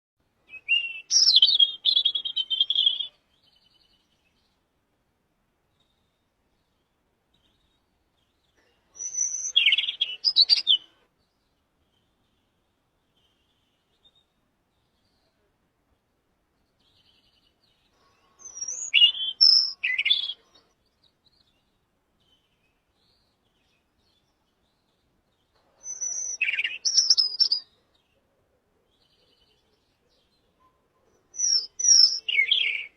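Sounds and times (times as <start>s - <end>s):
bird chirping and whistling: 9.0s - 10.8s, 18.4s - 20.4s, 25.8s - 27.6s, 31.4s - 32.9s.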